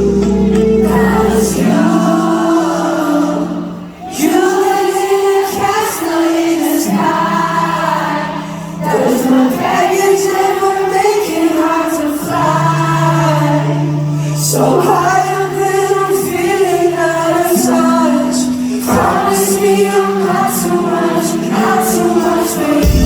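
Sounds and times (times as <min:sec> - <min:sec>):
sustained low instrumental chords: 0:00.0 - 0:04.1, 0:20.3 - 0:23.0
person singing live: 0:00.0 - 0:23.0.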